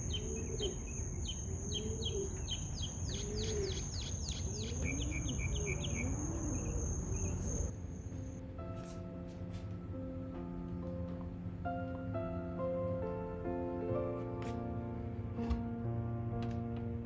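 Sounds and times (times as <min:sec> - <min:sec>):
insect high trill: 0:00.0 - 0:07.7
birds chirping: 0:00.0 - 0:08.4
soft music: 0:00.0 - 0:17.0.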